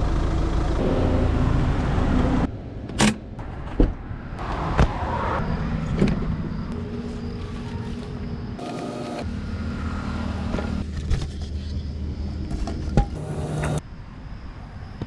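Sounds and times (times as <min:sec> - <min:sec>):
vehicle engine running: 0:00.0 - 0:02.5, 0:13.2 - 0:13.8.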